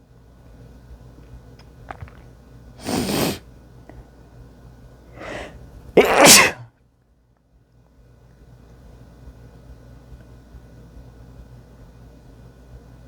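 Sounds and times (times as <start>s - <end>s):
person sneezing: 2.8s - 3.4s, 5.2s - 6.7s.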